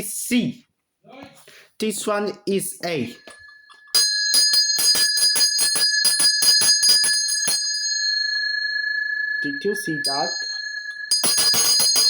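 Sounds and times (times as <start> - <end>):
handbell ringing: 3.1 - 12.0.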